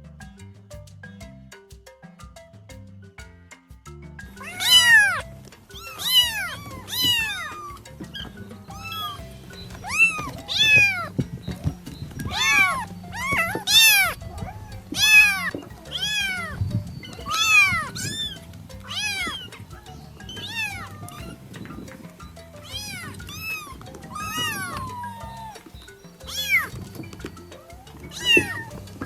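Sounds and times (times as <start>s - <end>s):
cat meowing: 4.4s - 5.2s, 5.8s - 7.8s, 8.8s - 9.2s, 9.8s - 11.1s, 12.2s - 16.6s, 17.3s - 19.5s, 20.4s - 21.2s, 22.6s - 25.7s, 26.3s - 26.7s, 28.1s - 28.7s.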